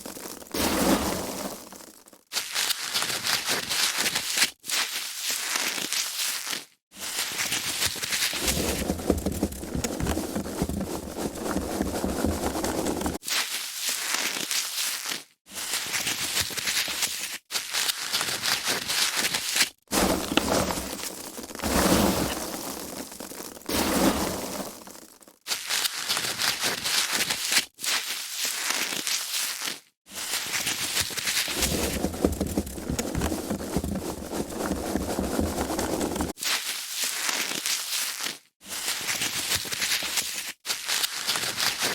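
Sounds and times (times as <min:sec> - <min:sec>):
foam packaging crinkling: 0:00.0 - 0:41.9.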